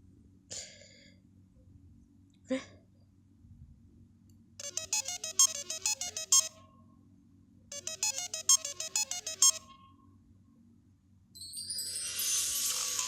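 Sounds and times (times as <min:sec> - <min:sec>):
phone ringtone melody: 0:04.6 - 0:06.6, 0:07.7 - 0:09.8.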